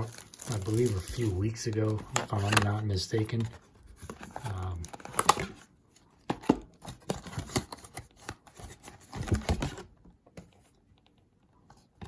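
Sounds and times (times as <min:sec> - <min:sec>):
plastic wrap and cardboard crinkling: 0:00.0 - 0:05.6.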